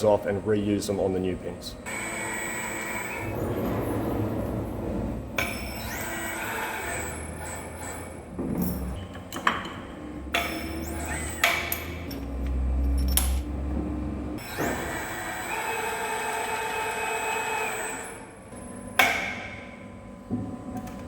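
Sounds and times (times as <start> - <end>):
low machine hum: 0.0 - 14.9.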